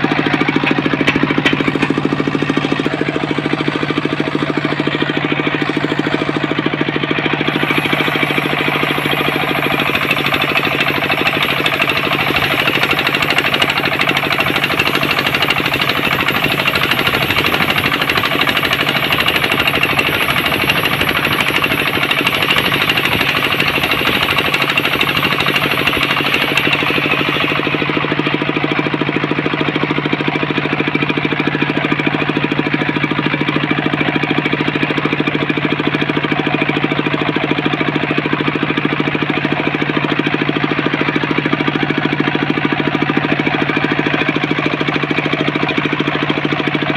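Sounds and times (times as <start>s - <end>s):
saw blade whining: 0.0s - 29.6s
engine rattling: 0.0s - 46.9s.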